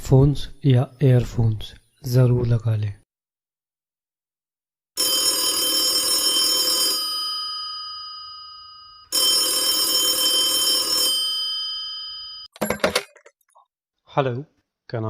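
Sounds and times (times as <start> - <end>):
telephone bell ringing: 5.0 - 12.5.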